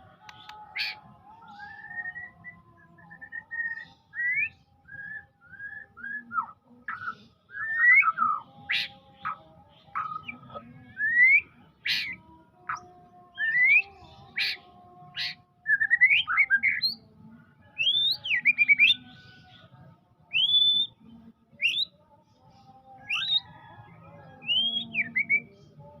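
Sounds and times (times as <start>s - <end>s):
songbird whistling: 0.4s - 8.9s, 20.3s - 21.0s, 24.5s - 25.5s.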